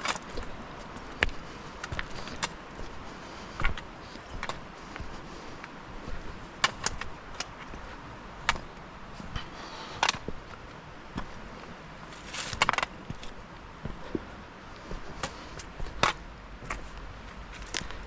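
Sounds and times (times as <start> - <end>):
footsteps crunching frozen ground: 0.0 - 18.0.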